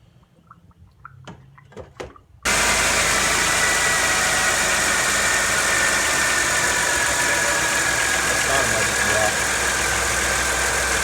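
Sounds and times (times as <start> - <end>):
car engine idling with whine: 2.5 - 11.0.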